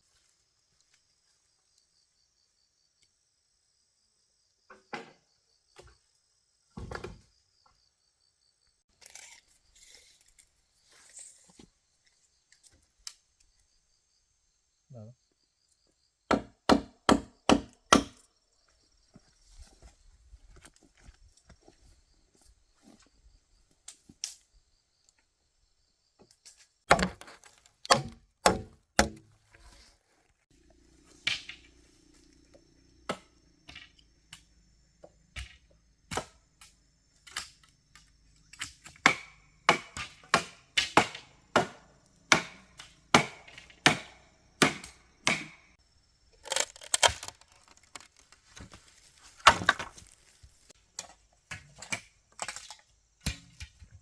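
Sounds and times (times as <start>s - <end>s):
blade chopping wood: 16.3s - 18.2s, 26.9s - 29.3s, 35.4s - 36.7s, 38.6s - 45.7s, 46.4s - 50.2s.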